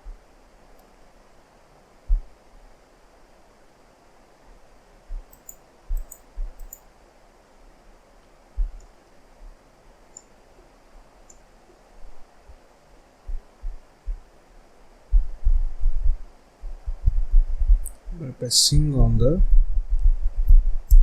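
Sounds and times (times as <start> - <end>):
faint room hiss: 0.0 - 21.0
dull low thuds: 2.1 - 2.3, 5.9 - 6.6, 8.6 - 8.8, 13.3 - 14.3, 15.1 - 21.0
computer mouse clicking: 5.2 - 6.8.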